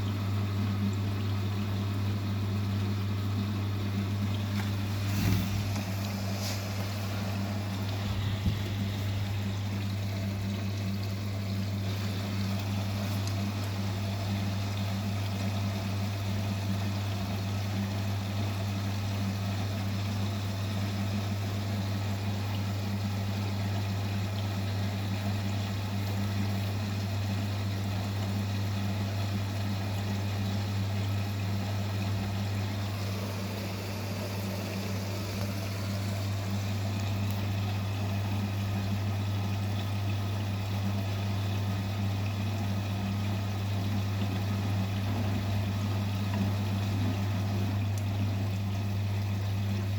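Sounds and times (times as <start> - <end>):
washing machine humming: 0.0 - 49.9
water sloshing: 3.8 - 15.2.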